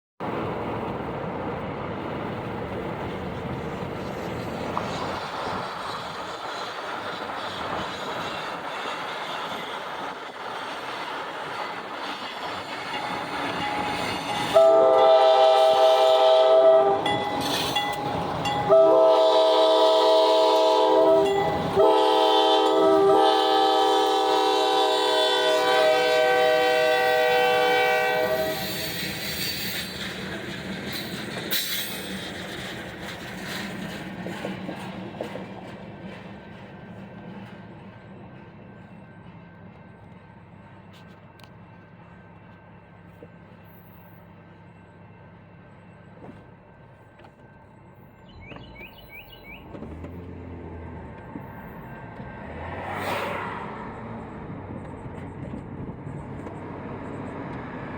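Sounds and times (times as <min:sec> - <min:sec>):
train rumble: 0:00.2 - 0:57.9
locomotive horn blasts: 0:14.3 - 0:17.3, 0:18.0 - 0:29.0.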